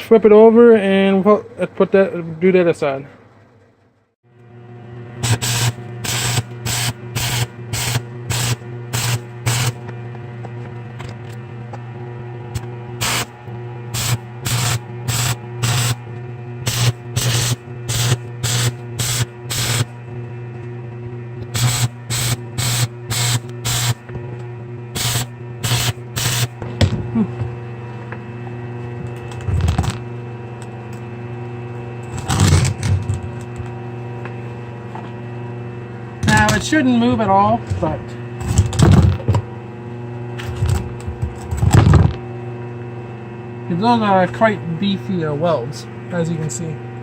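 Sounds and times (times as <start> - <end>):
steady electrical hum: 0.0 - 47.0
arc welder crackling bursts: 5.2 - 9.9, 12.5 - 20.0, 21.4 - 24.0, 24.9 - 26.6, 32.0 - 33.2.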